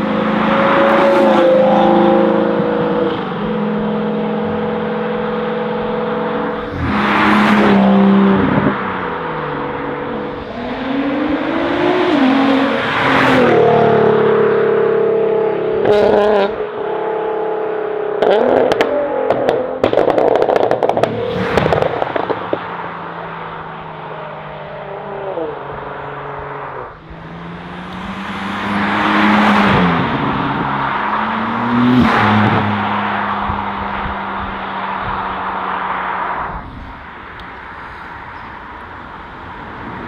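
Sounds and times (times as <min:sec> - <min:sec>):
sports car engines revving: 0:00.0 - 0:40.0
exhaust crackles and pops: 0:18.2 - 0:22.8.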